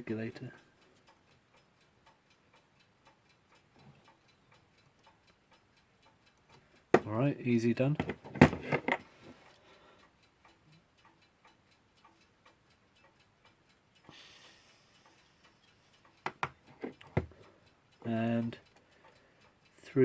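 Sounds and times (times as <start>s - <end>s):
mechanical clock ticking: 0.0s - 20.0s
clicks and knocks from handling: 7.9s - 9.2s, 16.2s - 17.5s.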